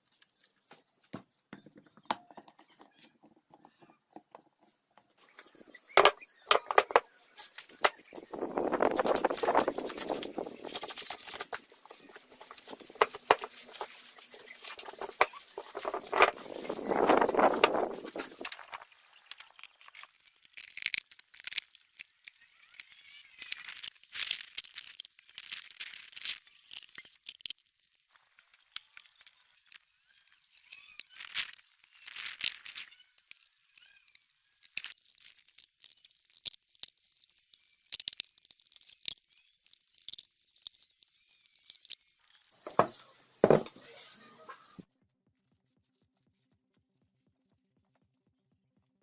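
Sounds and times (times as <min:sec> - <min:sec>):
light scraping and rubbing: 0:05.4 - 0:18.9.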